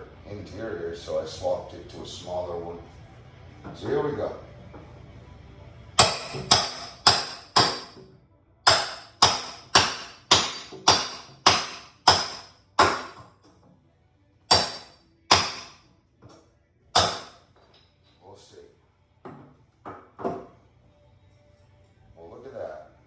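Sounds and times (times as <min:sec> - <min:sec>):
hammer striking metal nail puller: 0:06.0 - 0:08.0, 0:08.7 - 0:13.2, 0:14.5 - 0:15.8.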